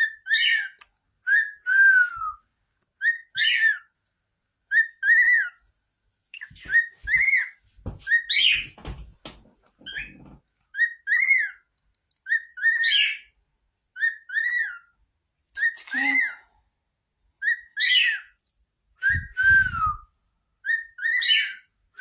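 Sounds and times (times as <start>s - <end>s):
cockatiel whistling: 1.3s - 2.4s, 3.0s - 3.8s, 4.7s - 5.6s, 14.0s - 14.8s, 19.0s - 20.0s, 20.6s - 22.0s
rustling and knocks: 6.4s - 10.5s.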